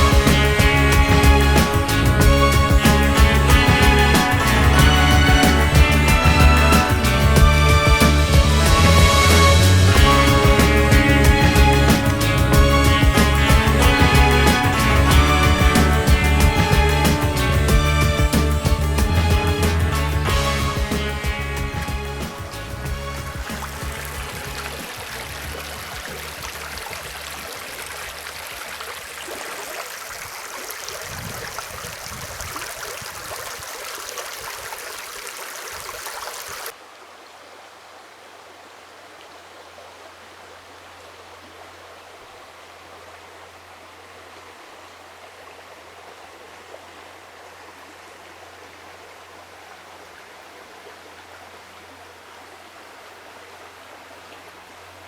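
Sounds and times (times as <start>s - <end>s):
rushing water: 0.0s - 55.0s.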